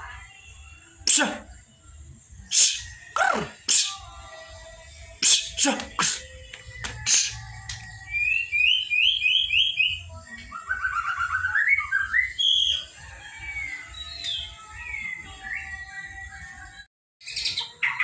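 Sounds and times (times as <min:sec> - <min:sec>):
bird singing whistled notes: 0:05.2 - 0:16.2.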